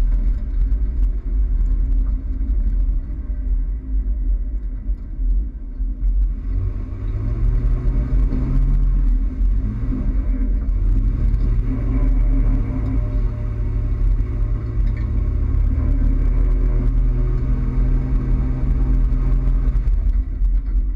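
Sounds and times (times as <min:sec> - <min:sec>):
pickup truck engine accelerating: 0:06.0 - 0:20.9.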